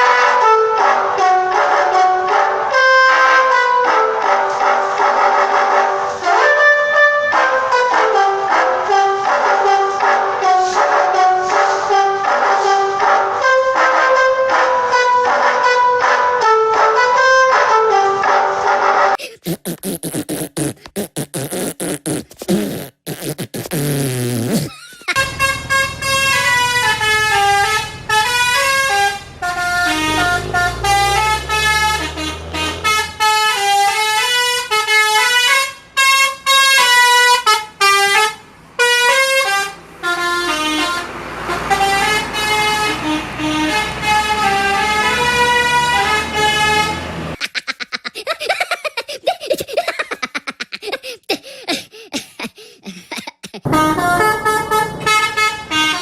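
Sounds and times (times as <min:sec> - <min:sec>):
bus horn playing a tune: 0:00.0 - 0:19.2, 0:25.1 - 0:47.4, 0:53.6 - 0:56.0.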